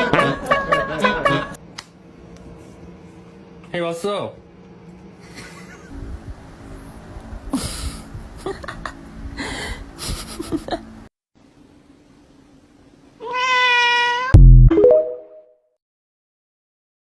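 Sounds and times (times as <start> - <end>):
cat meowing: 13.2 - 14.4.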